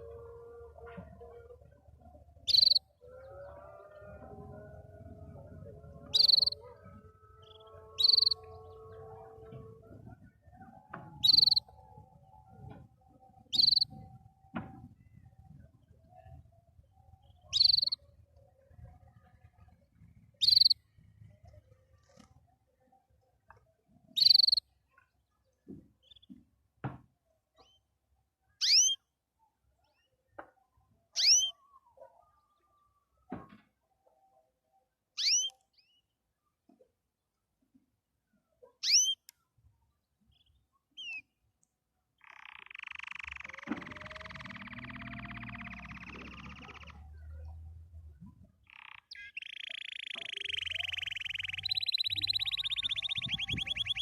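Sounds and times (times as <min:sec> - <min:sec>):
faint low drawn-out tones: 0:00.0 - 0:25.6
canary calling: 0:02.4 - 0:02.9, 0:05.3 - 0:09.4, 0:11.2 - 0:12.1, 0:13.4 - 0:14.0, 0:17.4 - 0:18.0, 0:20.4 - 0:20.8, 0:24.1 - 0:24.6, 0:28.6 - 0:29.0, 0:31.2 - 0:31.6, 0:35.2 - 0:35.6, 0:38.8 - 0:39.3, 0:42.2 - 0:47.5, 0:48.6 - 0:54.0.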